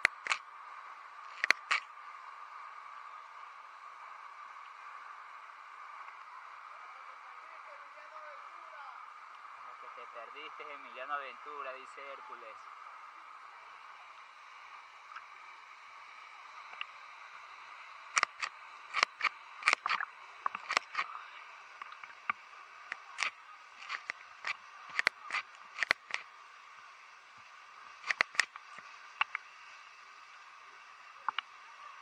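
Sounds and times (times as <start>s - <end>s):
water clicks and pops: 0.0s - 0.4s, 1.3s - 1.9s, 16.7s - 17.0s, 18.1s - 21.2s, 21.8s - 26.3s, 28.0s - 29.5s, 31.2s - 31.5s.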